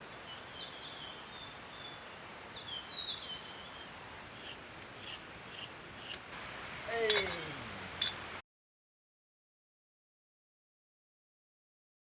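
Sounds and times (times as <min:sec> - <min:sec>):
steady background hiss: 0:00.0 - 0:08.4.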